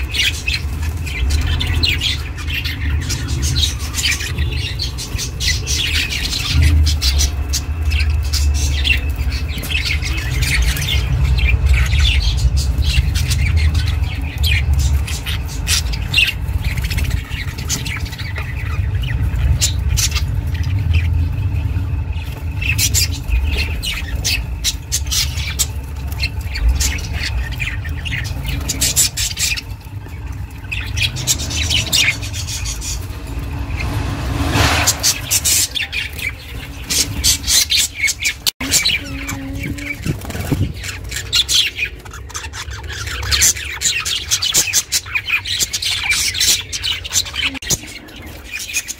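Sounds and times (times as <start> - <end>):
steady low hum: 0.0 - 43.7
budgies chirping and chattering: 0.0 - 48.9.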